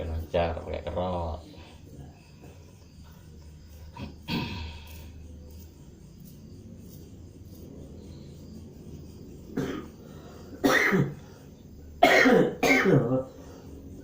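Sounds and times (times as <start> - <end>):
man coughing: 9.6 - 9.9, 10.6 - 11.2, 12.0 - 13.3.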